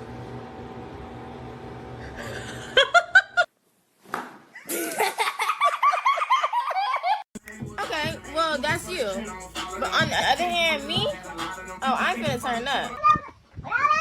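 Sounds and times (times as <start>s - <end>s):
person laughing: 2.0s - 3.5s, 4.6s - 7.2s.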